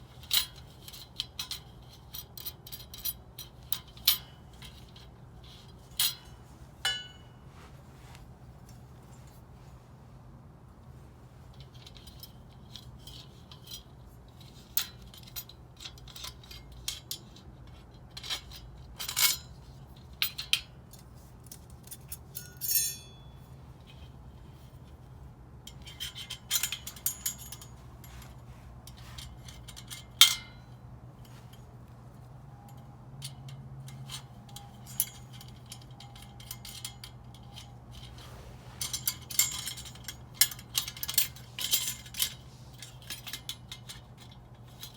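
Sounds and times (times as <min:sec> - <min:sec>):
low steady hum: 0:00.0 - 0:44.9.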